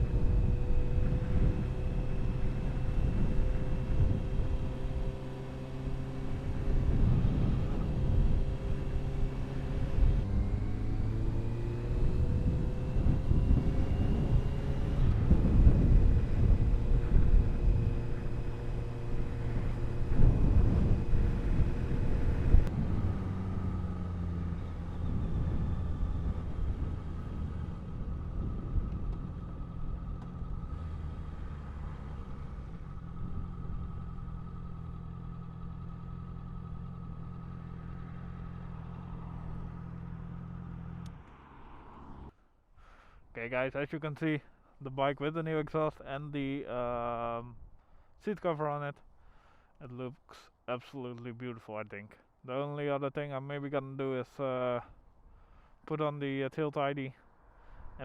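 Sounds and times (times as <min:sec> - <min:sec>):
wind rumble on microphone: 0:00.0 - 0:04.9, 0:06.3 - 0:34.0
motorcycle engine running: 0:00.0 - 0:42.3.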